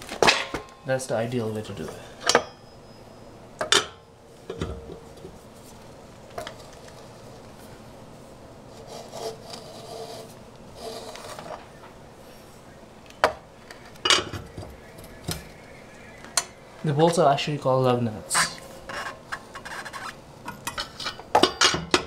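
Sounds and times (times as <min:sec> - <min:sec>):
wrench rubbing and scraping: 0:08.7 - 0:11.6, 0:18.3 - 0:21.3.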